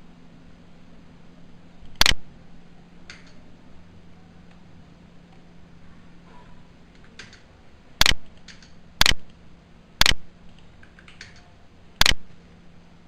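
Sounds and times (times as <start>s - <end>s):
computer mouse clicks: 6.9s - 9.4s, 10.0s - 12.2s.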